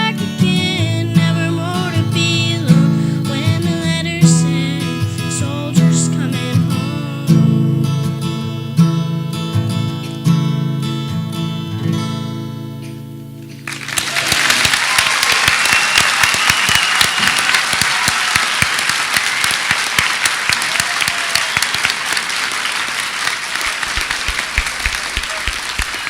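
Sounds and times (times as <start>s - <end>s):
audience applauding: 13.5s - 26.0s.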